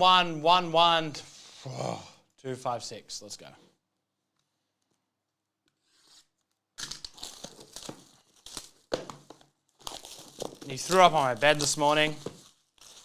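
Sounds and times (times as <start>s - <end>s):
packaging crinkling and tearing: 6.4s - 13.0s.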